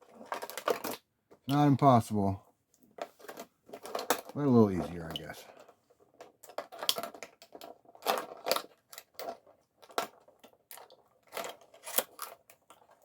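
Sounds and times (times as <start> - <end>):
plastic crackling and clicking: 0.0 - 1.6, 3.0 - 13.0
knife cutting plastic packaging: 10.7 - 12.5.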